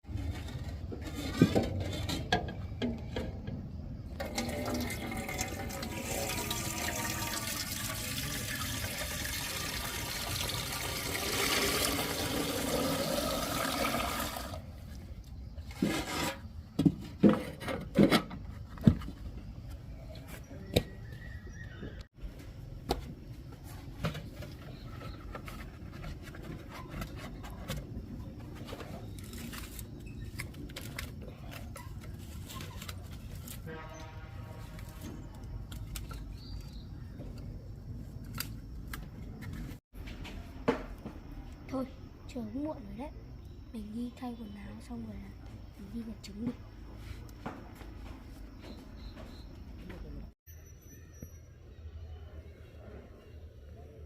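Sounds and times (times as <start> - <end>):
water pouring into container: 4.2 - 14.6
sharp knocks and clatters: 15.7 - 19.4.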